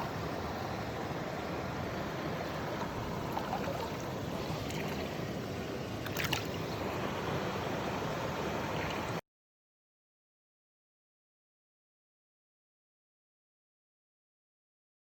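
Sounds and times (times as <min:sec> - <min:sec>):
stream water rushing: 0:00.0 - 0:09.2.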